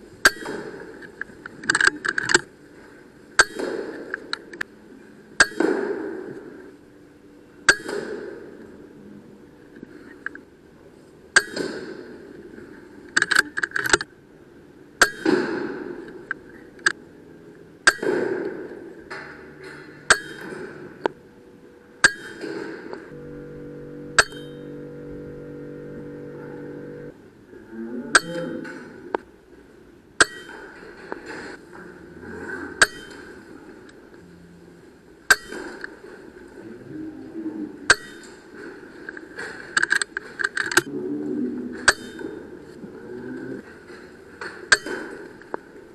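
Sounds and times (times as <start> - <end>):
steady humming tone: 16.0 - 27.5.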